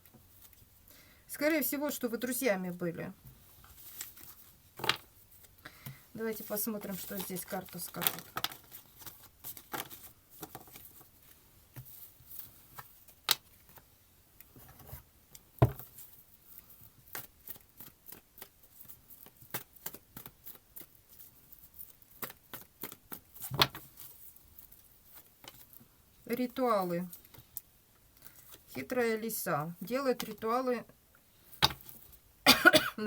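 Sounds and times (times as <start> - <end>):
cards shuffled and laid down: 3.7 - 11.1, 15.6 - 16.0, 22.2 - 24.1, 31.6 - 32.0.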